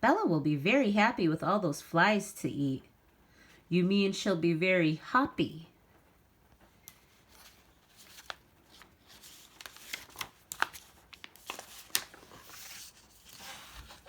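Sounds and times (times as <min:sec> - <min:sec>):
soft brushing hiss: 0:01.9 - 0:14.0
book pages turning: 0:06.6 - 0:14.0
paper snaps: 0:06.8 - 0:12.3.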